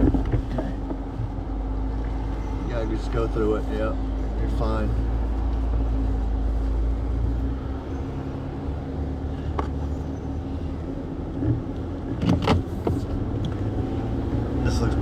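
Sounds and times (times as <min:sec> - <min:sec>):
knocks and clunks: 0:00.0 - 0:01.4, 0:11.3 - 0:13.6
engine running at low speed: 0:00.0 - 0:15.0.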